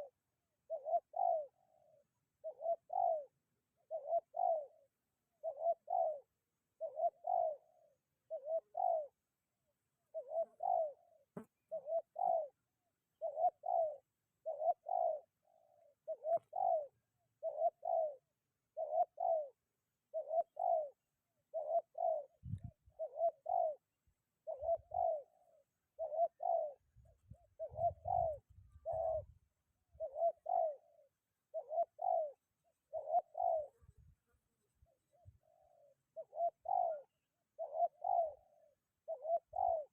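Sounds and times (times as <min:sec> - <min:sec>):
dove cooing: 0:00.0 - 0:09.2, 0:10.1 - 0:12.6, 0:13.2 - 0:34.0, 0:34.8 - 0:39.9
wind rumble on microphone: 0:22.4 - 0:22.9, 0:27.0 - 0:29.5.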